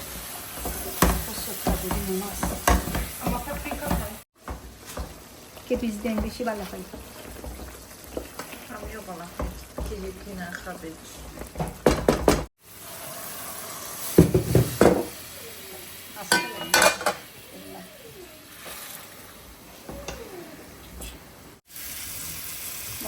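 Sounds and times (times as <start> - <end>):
spoon stirring and knocking pan: 0.0 - 12.5, 14.2 - 15.2, 16.3 - 17.3
curry sizzling in a pot: 0.0 - 23.0.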